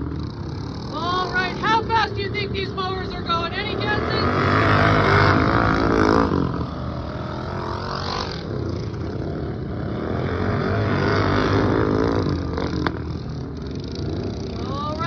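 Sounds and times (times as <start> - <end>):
racing lawnmower engines: 0.0 - 15.0.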